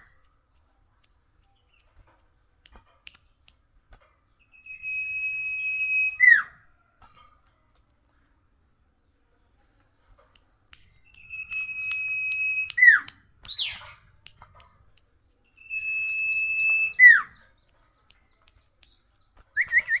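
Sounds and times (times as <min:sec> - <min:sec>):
bird whistling and chirping: 0:04.4 - 0:06.5, 0:11.0 - 0:14.0, 0:15.6 - 0:17.5, 0:19.5 - 0:20.0.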